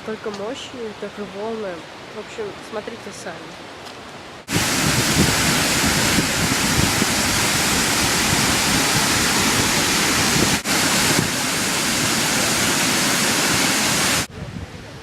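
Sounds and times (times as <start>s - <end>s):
waterfall rushing: 4.4s - 14.3s.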